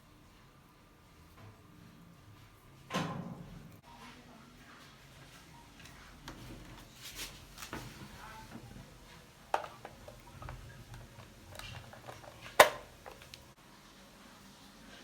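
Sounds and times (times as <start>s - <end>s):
objects clicking and knocking: 9.5s - 13.5s.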